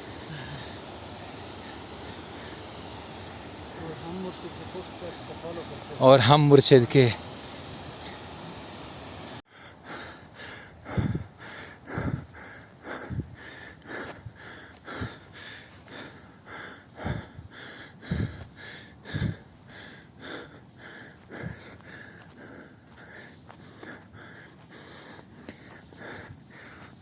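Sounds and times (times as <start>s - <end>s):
person breathing hard: 0.0s - 3.8s, 9.4s - 27.0s.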